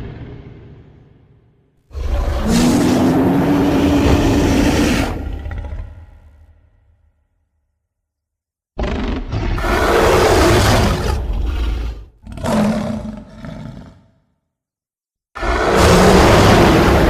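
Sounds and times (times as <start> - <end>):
gorilla monster roaring: 1.9 - 6.4, 8.8 - 14.2, 15.4 - 17.0.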